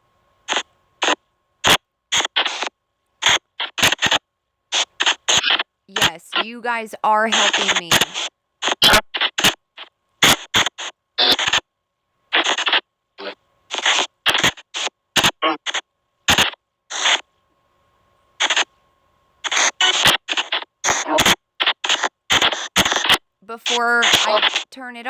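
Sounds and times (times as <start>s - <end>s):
bursts of white noise: 0.4s - 11.7s, 12.3s - 17.3s, 18.4s - 18.7s, 19.4s - 25.0s
garbled voice fragments: 5.9s - 8.2s, 23.5s - 25.0s.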